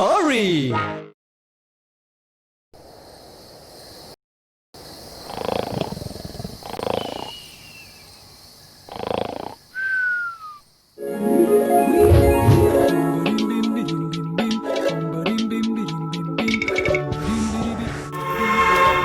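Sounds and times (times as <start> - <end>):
music: 0.7 - 1.2, 11.0 - 19.0
steady hiss: 2.8 - 4.2
falling whistle: 9.8 - 10.6.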